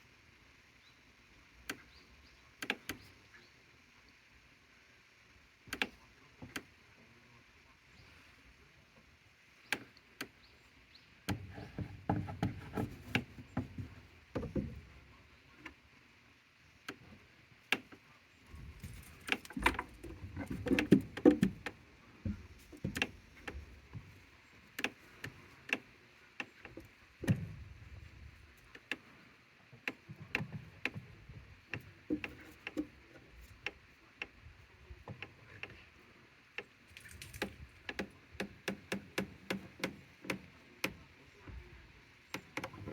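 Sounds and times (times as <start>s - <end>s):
sharp knocks and clicks: 11.3s - 14.9s, 18.8s - 25.8s, 36.6s - 41.6s, 42.3s - 42.9s
goats moving in wooden hut: 11.3s - 15.8s, 17.0s - 42.9s.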